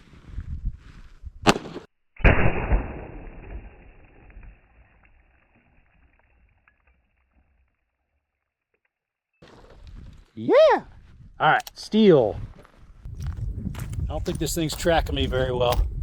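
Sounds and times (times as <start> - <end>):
revolver gunshot crack: 1.4 - 4.0
dull slowed-down boom: 2.2 - 4.7.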